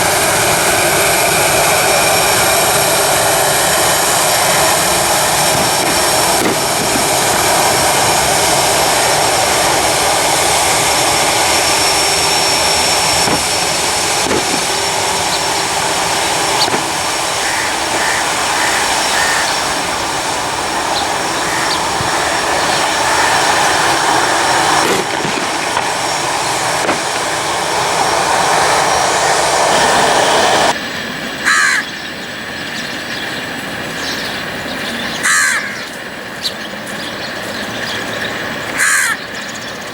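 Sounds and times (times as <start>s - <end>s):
jet engines rushing: 0.0s - 39.9s
crow cawing: 16.6s - 19.8s, 20.9s - 24.3s, 31.4s - 32.1s, 35.1s - 36.0s, 38.8s - 39.5s.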